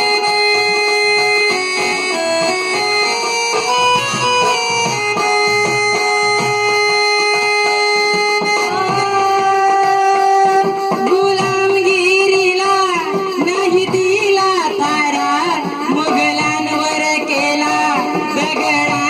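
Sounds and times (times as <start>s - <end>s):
sliding folk melody: 0.0s - 11.8s
held accompanying notes: 0.0s - 19.0s.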